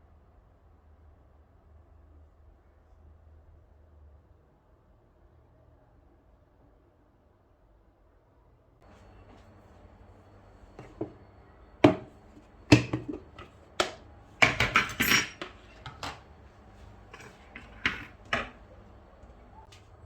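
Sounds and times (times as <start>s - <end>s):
kitchenware clinking and knocking: 10.8s - 11.2s, 11.8s - 16.3s, 17.0s - 18.6s.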